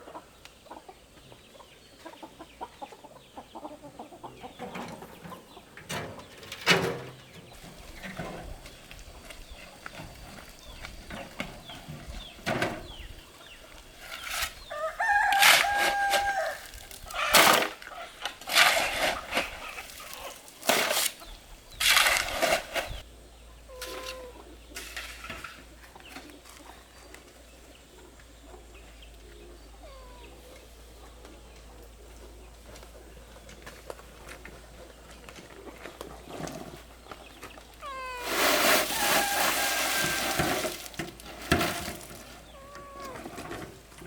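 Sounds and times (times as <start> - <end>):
chickens clucking and squawking: 0.0 - 20.6, 22.8 - 44.0
rooster call: 14.7 - 16.7, 37.8 - 40.8, 42.6 - 43.3.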